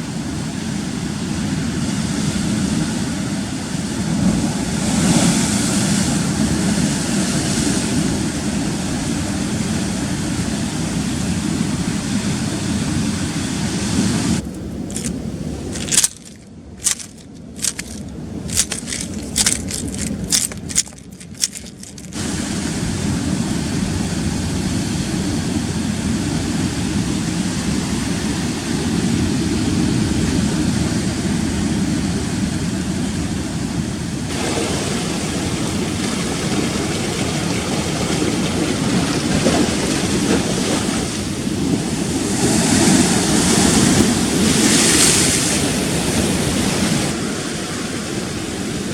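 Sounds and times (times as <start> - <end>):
rough sea surf: 0.0 - 48.9.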